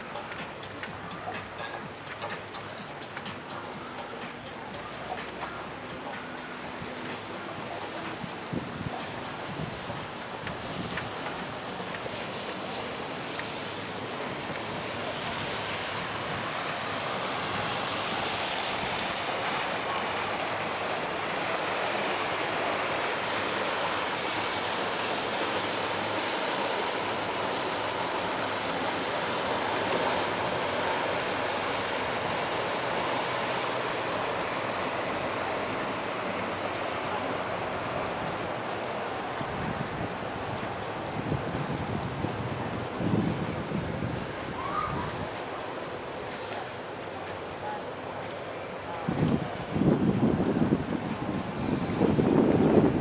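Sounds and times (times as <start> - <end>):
sea waves washing onto beach: 0.0 - 53.0.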